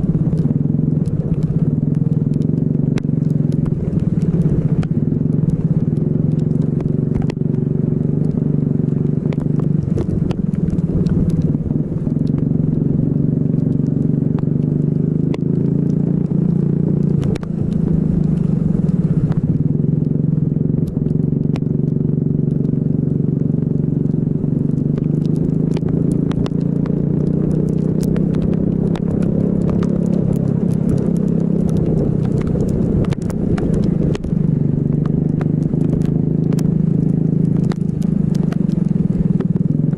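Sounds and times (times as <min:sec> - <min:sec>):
sharp crackling ticks: 0:00.0 - 0:39.9.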